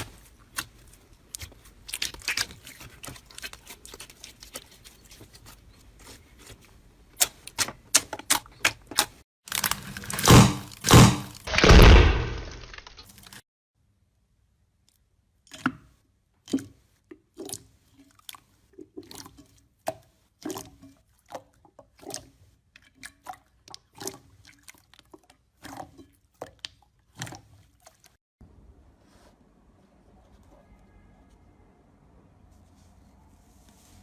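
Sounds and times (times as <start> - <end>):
slime squishing by hand: 0.0 - 9.7.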